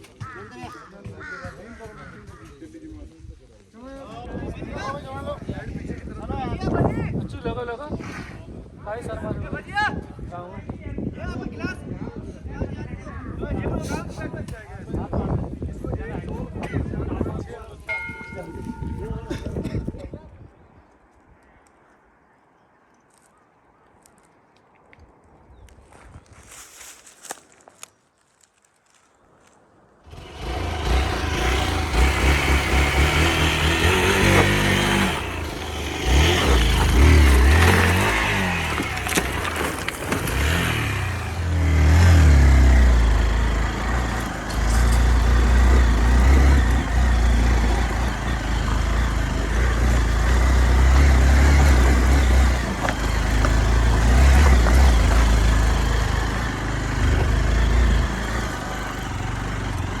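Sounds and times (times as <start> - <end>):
motorcycle engine revving: 30.1 - 60.0.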